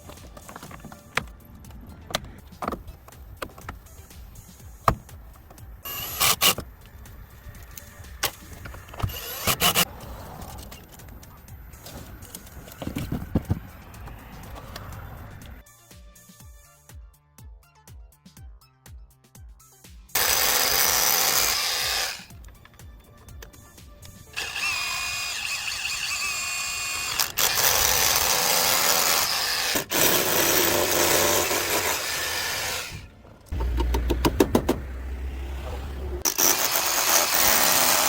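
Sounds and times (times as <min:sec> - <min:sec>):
background music: 0:00.0 - 0:38.0
power drill drilling: 0:05.8 - 0:06.6, 0:08.9 - 0:09.9, 0:20.2 - 0:22.3, 0:24.3 - 0:33.8, 0:36.2 - 0:38.0.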